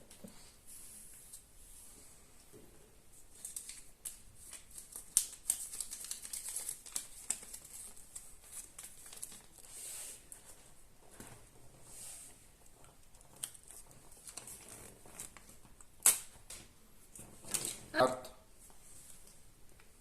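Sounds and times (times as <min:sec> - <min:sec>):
foil wrapper crinkling: 0:03.3 - 0:09.7, 0:13.1 - 0:16.3
small clicks and crackles: 0:03.3 - 0:09.7, 0:12.6 - 0:17.9.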